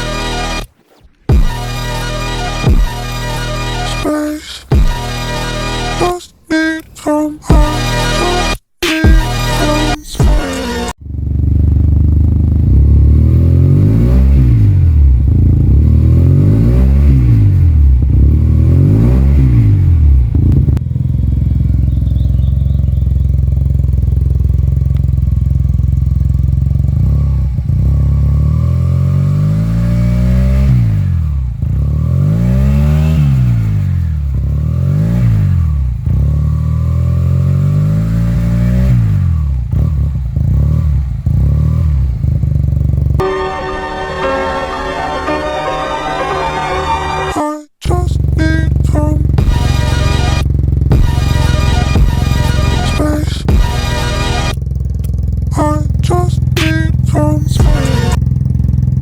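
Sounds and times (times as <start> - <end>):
scooter engine revving and idling: 10.9 - 43.2, 48.0 - 59.0.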